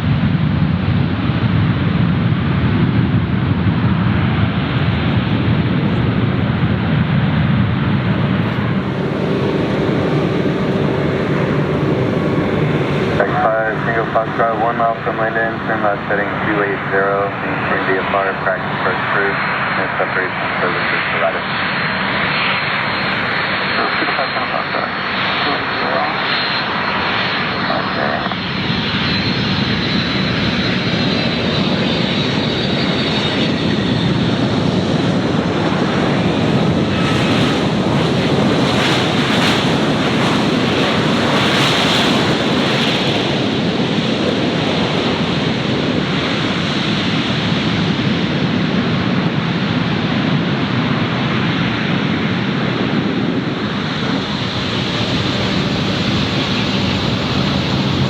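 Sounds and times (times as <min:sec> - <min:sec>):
jet plane passing: 0:00.0 - 0:58.0.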